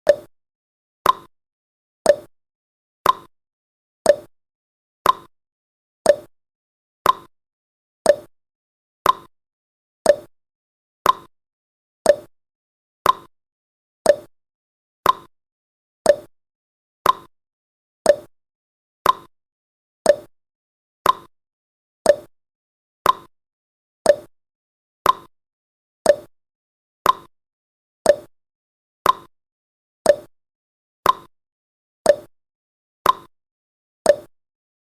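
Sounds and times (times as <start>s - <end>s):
timer ticking: 0.0s - 0.3s, 1.0s - 1.3s, 2.1s - 2.3s, 3.0s - 3.3s, 4.1s - 4.3s, 5.0s - 5.3s, 6.1s - 6.3s, 7.0s - 7.3s, 8.1s - 8.3s, 9.0s - 9.3s, 10.0s - 10.3s, 11.0s - 11.3s, 12.0s - 12.3s, 13.0s - 13.3s, 14.0s - 14.3s, 15.0s - 15.3s, 16.1s - 16.3s, 17.0s - 17.3s, 18.1s - 18.3s, 19.0s - 19.3s, 20.1s - 20.3s, 21.0s - 21.3s, 22.1s - 22.3s, 23.0s - 23.3s, 24.1s - 24.3s, 25.0s - 25.3s, 26.0s - 26.3s, 27.0s - 27.3s, 28.1s - 28.3s, 29.0s - 29.3s, 30.1s - 30.3s, 31.0s - 31.3s, 32.1s - 32.3s, 33.0s - 33.3s, 34.1s - 34.3s.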